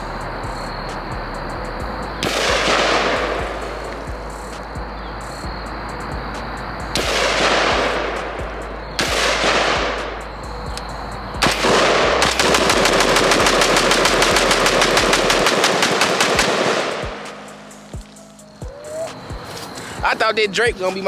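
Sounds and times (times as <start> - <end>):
rifle shots with ringing echo: 2.2 - 3.8, 7.0 - 8.4, 9.0 - 10.2, 11.4 - 17.9.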